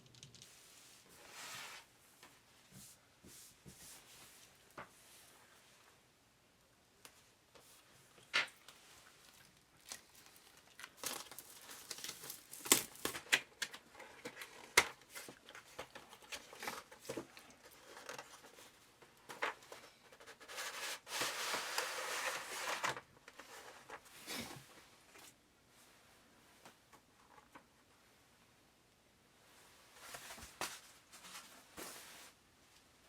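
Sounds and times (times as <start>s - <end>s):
crinkling rustle: 7.6s - 24.2s.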